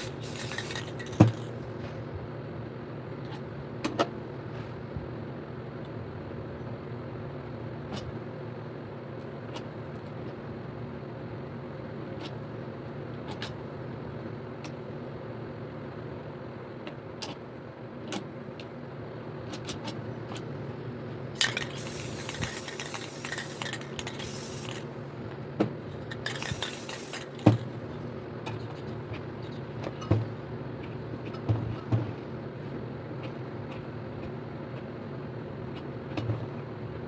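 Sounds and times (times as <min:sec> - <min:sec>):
spray paint can hissing: 0:00.0 - 0:01.5, 0:21.4 - 0:24.9, 0:26.2 - 0:27.6
steady low hum: 0:10.2 - 0:37.0.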